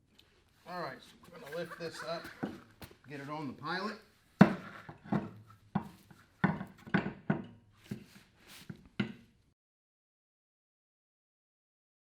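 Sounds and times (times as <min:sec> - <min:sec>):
wheel and tire clunking onto hub: 0:04.4 - 0:08.1.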